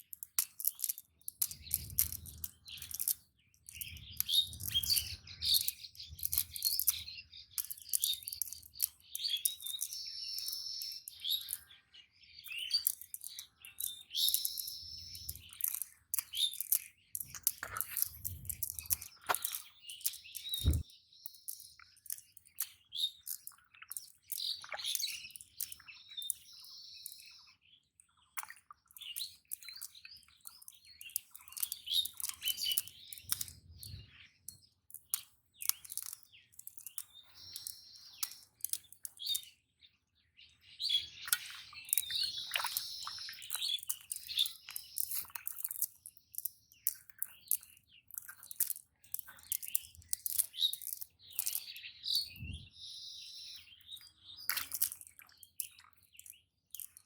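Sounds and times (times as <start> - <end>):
birds chirping: 1.3 - 45.3, 46.4 - 57.0
low thump: 20.6 - 20.8.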